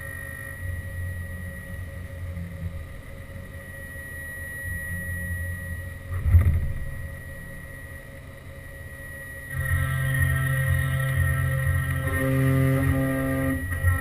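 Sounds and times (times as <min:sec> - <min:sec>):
milling machine whine and hum: 0:00.0 - 0:14.0
low machine surge: 0:09.4 - 0:14.0.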